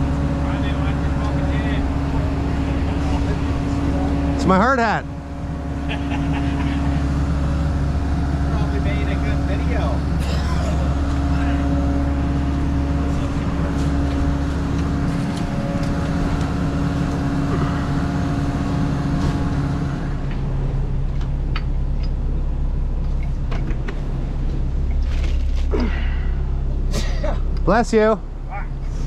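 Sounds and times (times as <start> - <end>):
engine running with low hum: 0.0 - 29.0
higher steady tone: 1.8 - 20.2.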